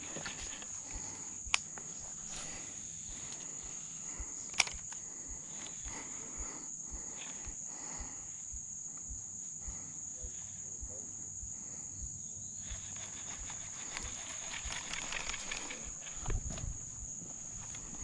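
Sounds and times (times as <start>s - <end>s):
insects droning: 0.0s - 18.0s
sharp clicks: 4.5s - 6.0s.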